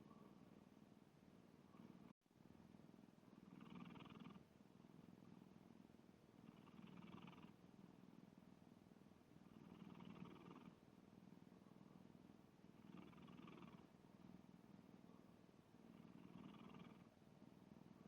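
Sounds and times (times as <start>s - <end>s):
cat snoring faintly: 1.6s - 2.2s, 3.3s - 8.4s, 9.4s - 18.0s.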